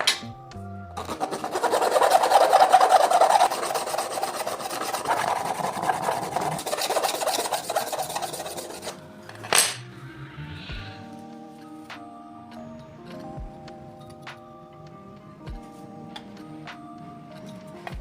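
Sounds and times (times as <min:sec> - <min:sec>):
abrasive scraping on workpiece: 0:01.0 - 0:11.1.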